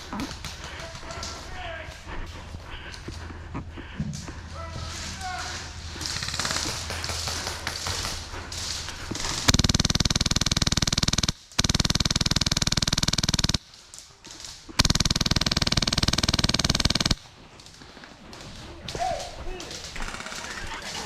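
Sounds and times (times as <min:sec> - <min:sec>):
rustling movement: 0:00.0 - 0:09.6, 0:15.8 - 0:21.0
airsoft gun firing bursts: 0:06.0 - 0:13.9, 0:14.7 - 0:17.3.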